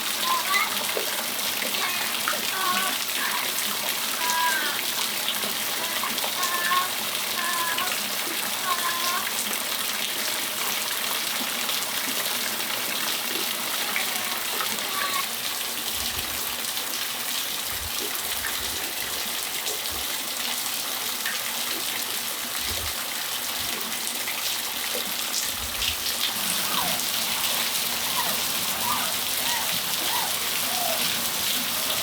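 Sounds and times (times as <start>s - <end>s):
rain falling on a patio: 0.0s - 32.0s
faint high calls: 26.3s - 32.0s.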